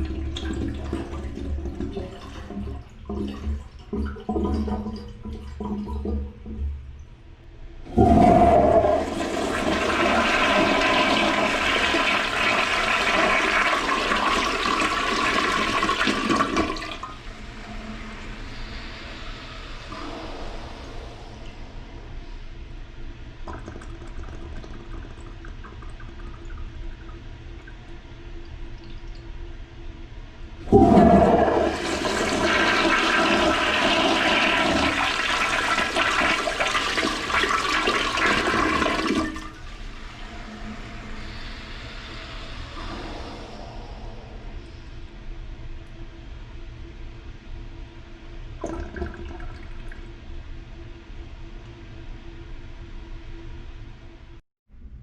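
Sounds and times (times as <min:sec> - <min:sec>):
toilet flushing: 0:00.0 - 0:06.6, 0:07.9 - 0:21.6, 0:23.5 - 0:28.1, 0:30.6 - 0:44.0, 0:48.6 - 0:50.1
quiet running water: 0:00.0 - 0:22.4, 0:23.0 - 0:45.2, 0:48.5 - 0:50.6.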